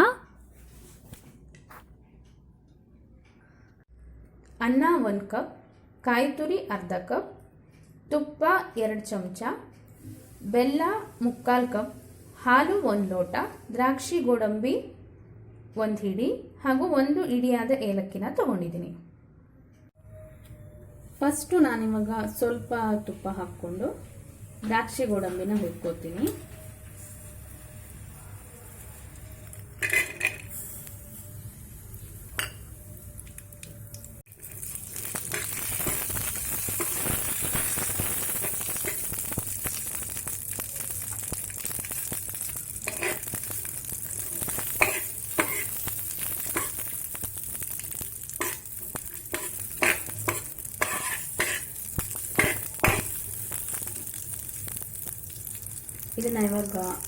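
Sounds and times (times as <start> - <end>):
nuts frying in a pan: 21.4 - 57.0.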